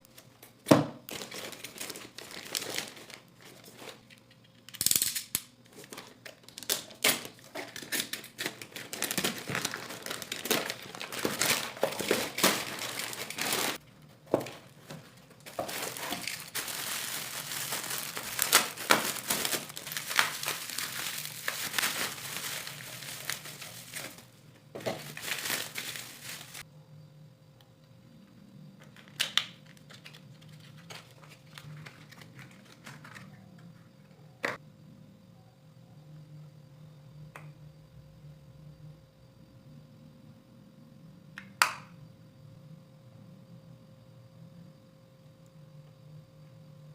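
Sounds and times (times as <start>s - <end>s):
packaging crinkling and rustling: 1.0s - 4.3s, 5.7s - 26.6s, 28.8s - 33.4s.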